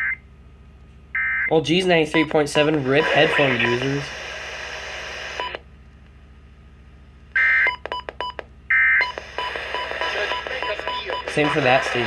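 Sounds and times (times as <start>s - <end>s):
alert data tone bursts: 2.1s - 4.1s
radio hiss and clicking: 2.6s - 5.6s, 9.1s - 12.0s.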